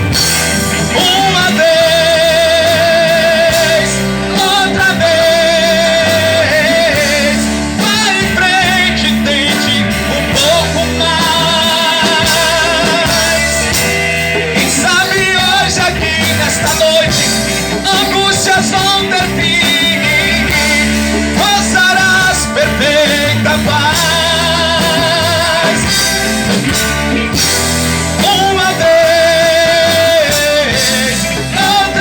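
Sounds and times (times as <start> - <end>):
person singing with vibrato: 0.0 - 32.0
rock band playing: 0.0 - 32.0
steady bass: 0.0 - 32.0.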